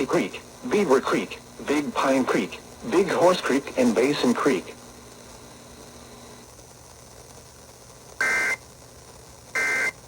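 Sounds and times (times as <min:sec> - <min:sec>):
faint steady hiss: 0:00.0 - 0:10.0
buzzy two-tone digital bursts: 0:08.2 - 0:08.6, 0:09.5 - 0:10.0.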